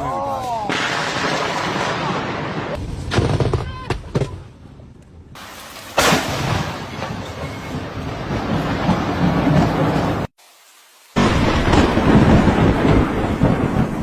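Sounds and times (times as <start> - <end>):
sharp thunderclap: 5.9 - 10.3, 11.2 - 14.0
low rumble of thunder: 6.2 - 10.3, 11.2 - 14.0.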